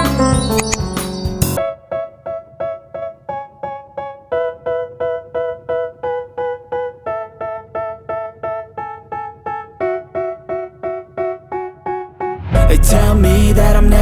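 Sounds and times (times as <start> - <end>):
keyboard playing repeated chords: 0.0 - 14.0.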